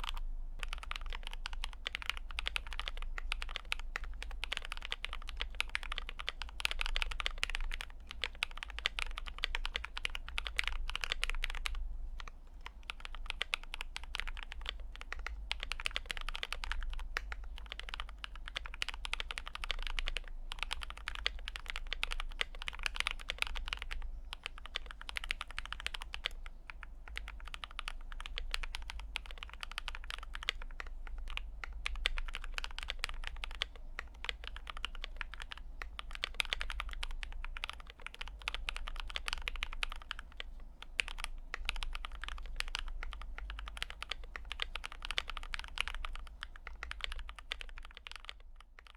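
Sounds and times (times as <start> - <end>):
mechanical keyboard typing: 0.0 - 48.9.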